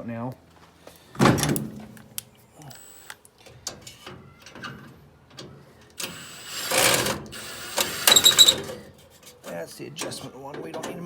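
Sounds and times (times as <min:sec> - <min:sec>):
power drill whirring: 0:02.6 - 0:03.2, 0:06.0 - 0:08.8
tool clicking on metal: 0:06.0 - 0:08.8.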